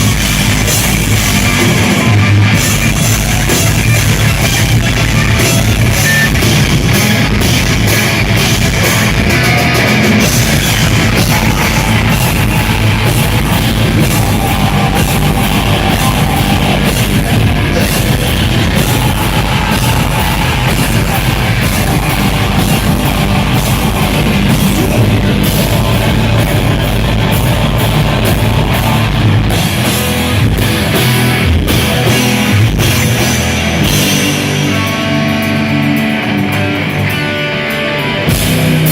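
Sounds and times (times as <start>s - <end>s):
heavy rock band playing: 0.0s - 38.9s
person singing: 8.9s - 29.5s.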